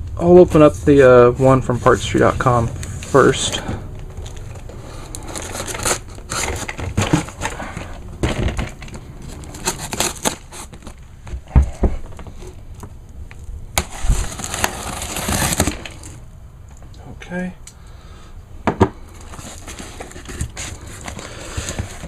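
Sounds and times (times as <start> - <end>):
packaging crinkling and tearing: 2.4 - 11.3, 12.3 - 16.2, 19.1 - 22.0
sharp knocks and dull thumps: 18.6 - 19.0.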